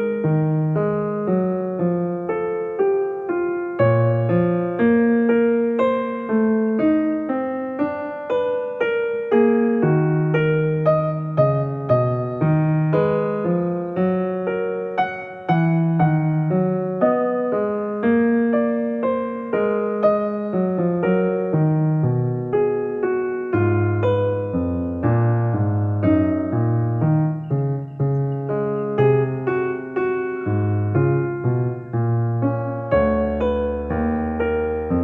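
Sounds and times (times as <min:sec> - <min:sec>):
gentle electric piano melody: 0:00.0 - 0:35.0.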